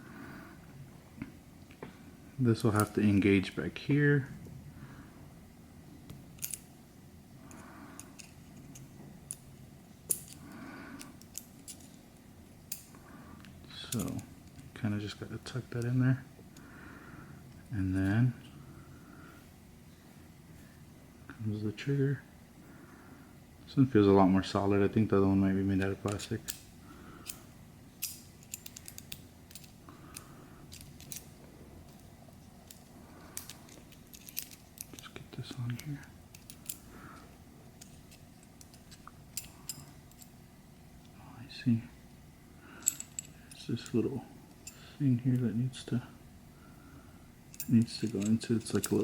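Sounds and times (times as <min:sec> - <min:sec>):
small metal parts clicking: 0:06.4 - 0:06.6, 0:07.5 - 0:09.4, 0:10.1 - 0:12.0, 0:12.7 - 0:13.0, 0:13.7 - 0:14.7, 0:28.0 - 0:31.3, 0:31.9 - 0:37.2, 0:37.8 - 0:40.3, 0:42.8 - 0:44.9, 0:47.5 - 0:49.0.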